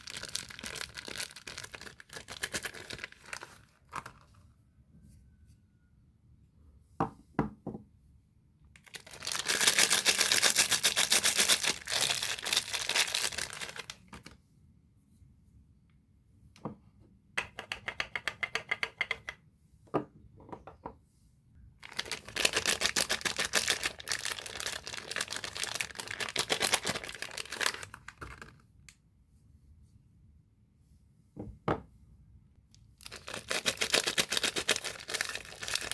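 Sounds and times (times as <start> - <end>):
wrappers tearing and crinkling: 0.0 - 4.2, 8.8 - 14.3, 21.8 - 28.6, 33.0 - 35.9.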